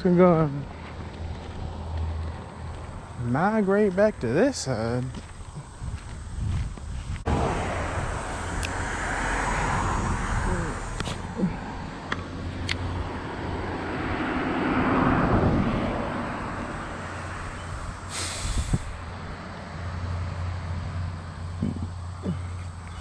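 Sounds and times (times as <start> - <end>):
low hum of traffic: 0.0 - 23.0
vehicle driving past: 0.6 - 3.4, 7.3 - 18.2
short hiss: 18.1 - 19.0.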